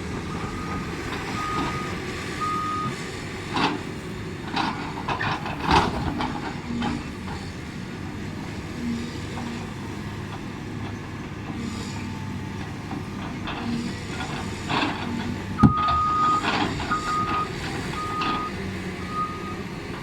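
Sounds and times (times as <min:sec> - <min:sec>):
excavator diesel engine running: 0:00.0 - 0:20.0
metal clanks: 0:13.3 - 0:18.5.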